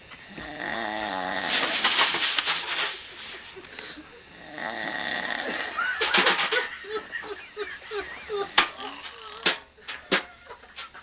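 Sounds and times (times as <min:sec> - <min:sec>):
man snoring: 0:00.2 - 0:03.0, 0:03.8 - 0:06.5, 0:08.2 - 0:09.6.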